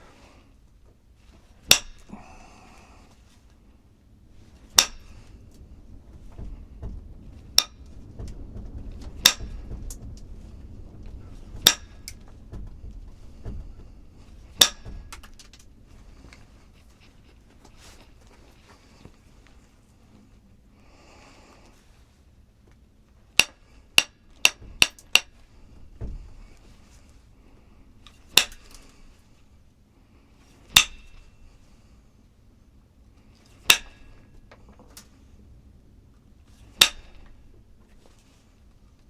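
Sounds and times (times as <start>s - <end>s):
rustling and handling: 0.0s - 20.4s.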